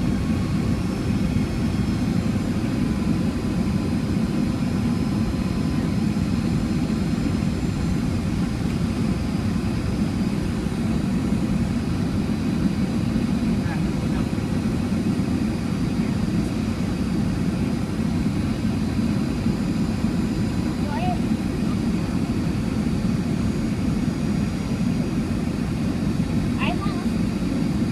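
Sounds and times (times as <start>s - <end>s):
airflow rush in cabin: 0.0s - 27.9s
jet engine whine: 0.0s - 27.9s.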